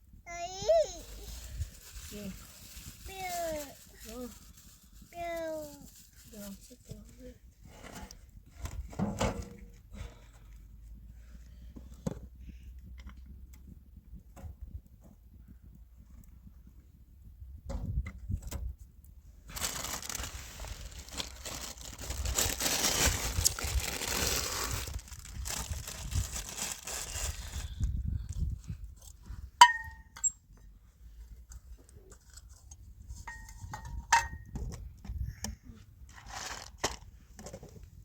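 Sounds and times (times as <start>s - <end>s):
rustling crinkling: 0.5s - 7.4s, 19.5s - 28.0s.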